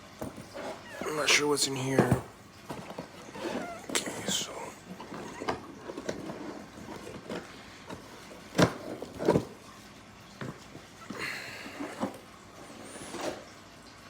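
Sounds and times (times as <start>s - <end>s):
packaging rustling: 0.2s - 9.8s
scraping rustle: 0.2s - 9.8s.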